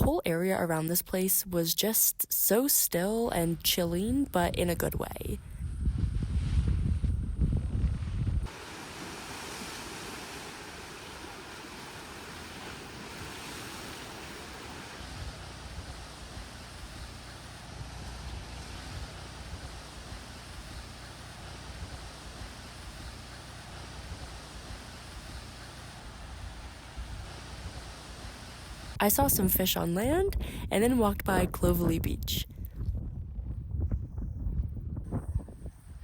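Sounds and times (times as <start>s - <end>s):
low wind rumble: 3.0s - 36.0s
wind buffeting microphone: 3.2s - 36.0s
ocean surf washing in: 8.4s - 31.6s.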